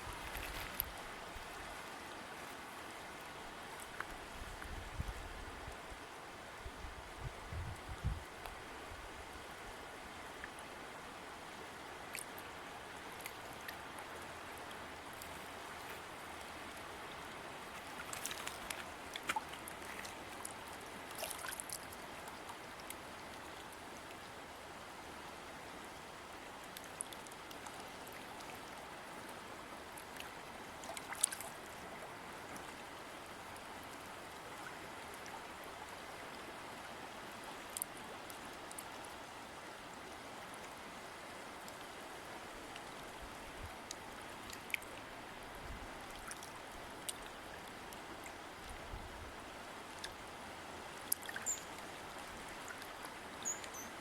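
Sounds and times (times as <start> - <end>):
river water running: 0.0 - 54.0
water splashes: 15.1 - 22.6, 30.0 - 32.8, 51.0 - 53.9.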